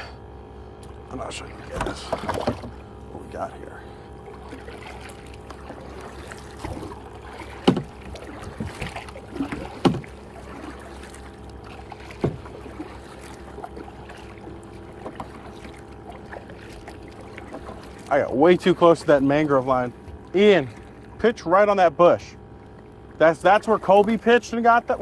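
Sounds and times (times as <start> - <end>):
water sloshing: 0.4 - 25.0
paddle knocking on plastic hull: 1.7 - 2.8, 4.8 - 18.1.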